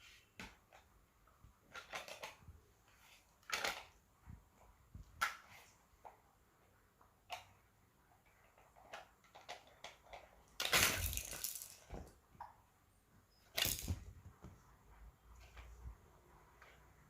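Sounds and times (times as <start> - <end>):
rustling clatter of toys: 1.6 - 4.0, 8.2 - 12.2, 13.5 - 14.3.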